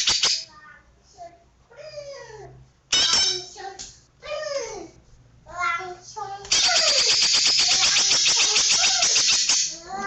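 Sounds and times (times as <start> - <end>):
bird chattering and whistling: 0.0 - 0.5, 6.5 - 9.8.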